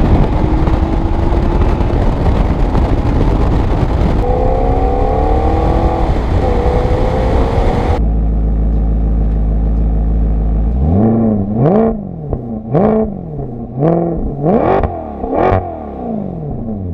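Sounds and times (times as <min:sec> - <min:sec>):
car engine idling: 0:00.0 - 0:15.7
car engine accelerating: 0:00.0 - 0:16.9
engine revs blipped: 0:04.1 - 0:08.2, 0:10.6 - 0:16.9.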